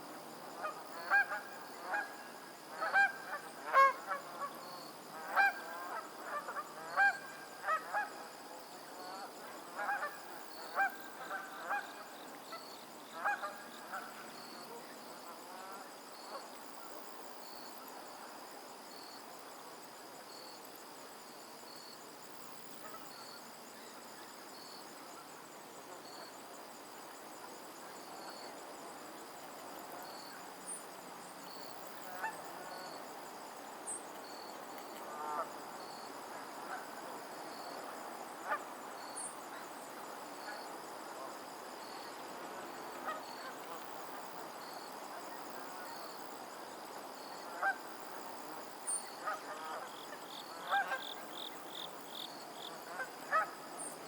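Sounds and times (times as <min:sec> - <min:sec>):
faint steady hiss: 0:00.0 - 0:54.0.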